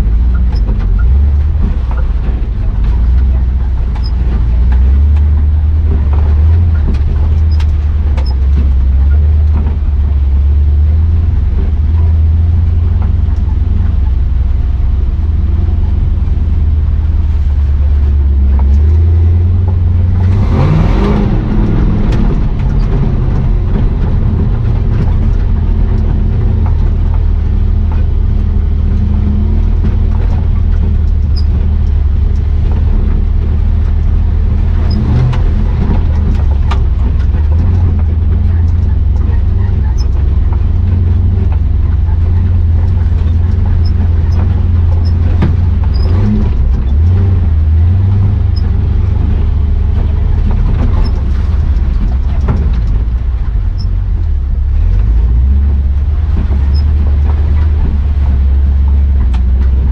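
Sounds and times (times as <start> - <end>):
rushing noise: 0.0 - 39.6
truck engine running under load: 0.0 - 59.9
engine revving up: 18.5 - 31.5.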